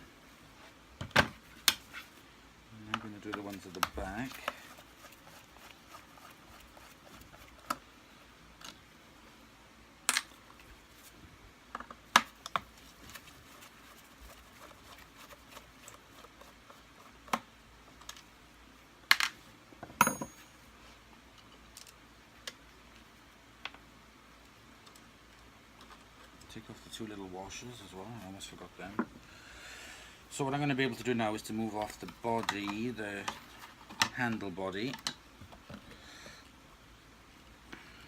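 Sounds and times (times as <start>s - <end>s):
parts handled and set down: 1.0s - 2.0s, 10.1s - 10.7s, 19.1s - 20.6s.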